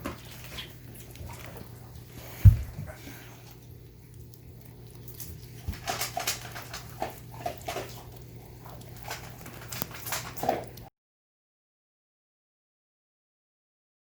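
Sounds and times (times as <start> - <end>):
dog crunching and chewing: 0.0 - 10.9.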